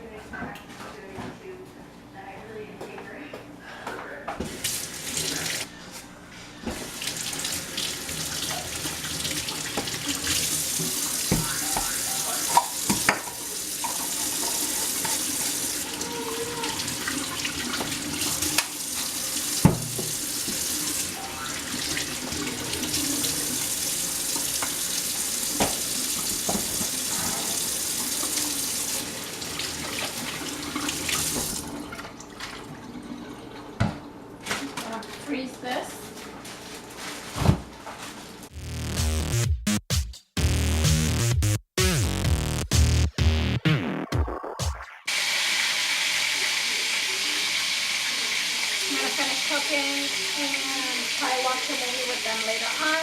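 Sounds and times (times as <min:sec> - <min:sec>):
tap running into sink: 0:08.4 - 0:15.4, 0:17.6 - 0:18.8, 0:19.5 - 0:20.9, 0:25.5 - 0:27.0, 0:30.8 - 0:32.1
knocks and clinks in sink: 0:19.6 - 0:20.2.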